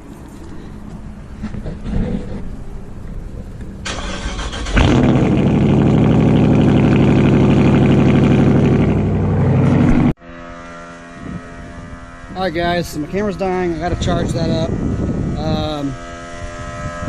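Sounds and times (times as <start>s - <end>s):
car engine starting and idling: 2.6s - 10.2s.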